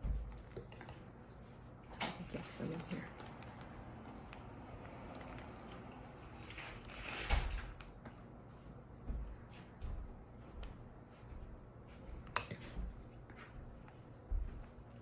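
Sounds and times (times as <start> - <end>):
fork clinking on bowl: 12.3 - 12.8.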